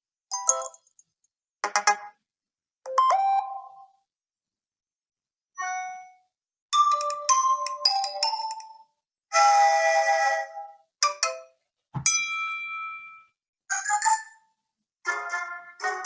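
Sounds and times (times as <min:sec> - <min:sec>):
chiming ringtone melodies: 0:00.3 - 0:00.9, 0:06.8 - 0:08.9, 0:12.1 - 0:14.4.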